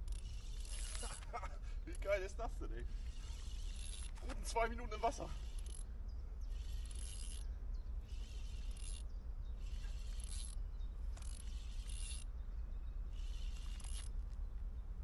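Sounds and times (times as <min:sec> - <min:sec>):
fishing reel buzzing: 0:00.0 - 0:02.1, 0:02.7 - 0:12.4, 0:13.0 - 0:14.4.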